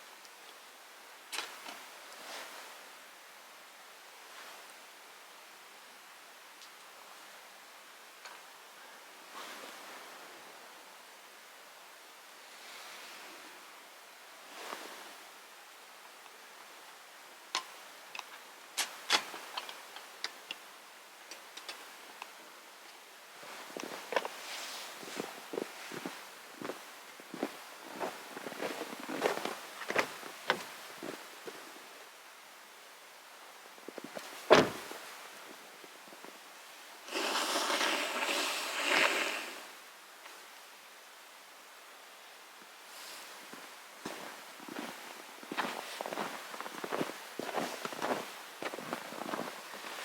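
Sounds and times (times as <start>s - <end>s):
faint steady hiss: 0.0s - 50.0s
rushing watery hiss: 37.0s - 39.9s.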